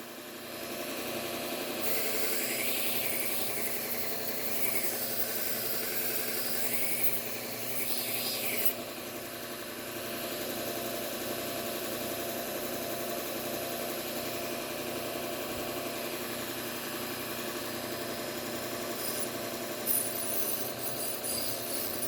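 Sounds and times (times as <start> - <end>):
knife blade grinding hiss: 1.8 - 8.8, 19.0 - 22.0
belt grinder motor humming: 1.8 - 9.3, 18.6 - 22.0.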